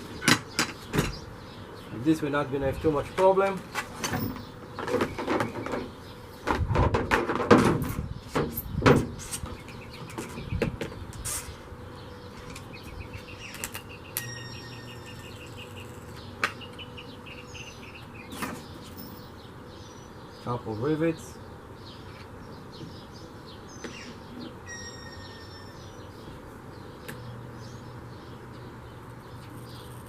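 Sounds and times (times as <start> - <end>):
birds chirping: 0.0 - 7.0, 7.8 - 30.0
knocks clunks and rattles: 0.2 - 1.3, 3.1 - 11.0.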